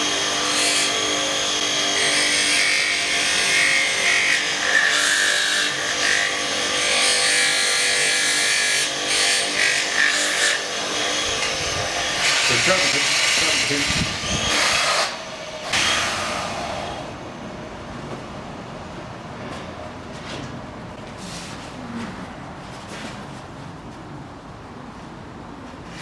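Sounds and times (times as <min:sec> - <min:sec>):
grinder motor hum: 0:08.8 - 0:17.3.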